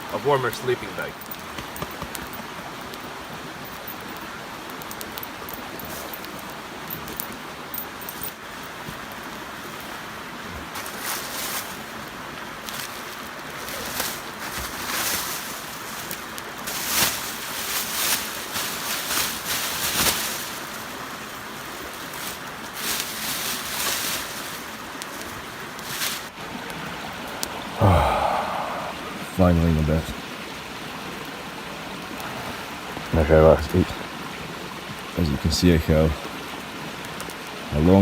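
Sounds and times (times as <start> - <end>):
steady background hiss: 0.0 - 38.0
fabric rustling: 10.5 - 12.0, 12.6 - 26.4.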